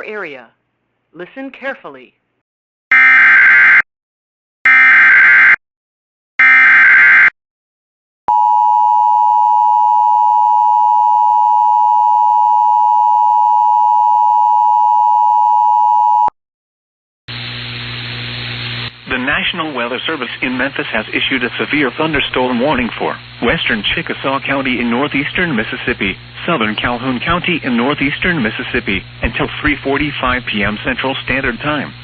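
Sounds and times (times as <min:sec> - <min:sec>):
hiss with low hum: 0:17.3 - 0:32.0.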